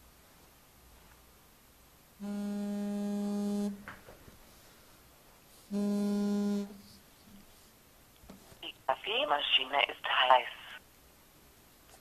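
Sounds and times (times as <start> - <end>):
electronic buzzer tone: 2.2 - 3.8, 5.7 - 7.0.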